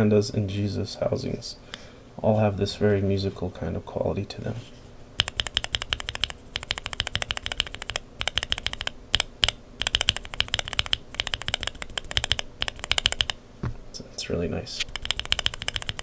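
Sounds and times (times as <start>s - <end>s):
mechanical keyboard switches clacking: 5.2s - 13.4s, 14.9s - 16.0s.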